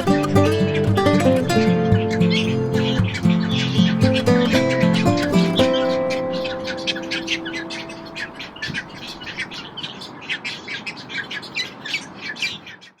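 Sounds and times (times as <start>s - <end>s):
soft background music: 0.0s - 8.5s
small birds chirping: 0.0s - 13.0s.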